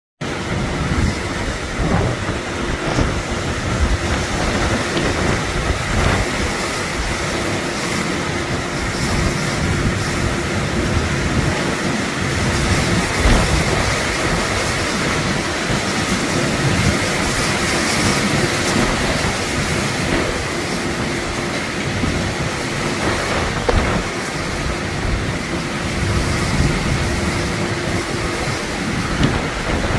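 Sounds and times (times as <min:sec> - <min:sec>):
heavy rain: 0:00.2 - 0:29.9
strong wind: 0:00.2 - 0:29.9.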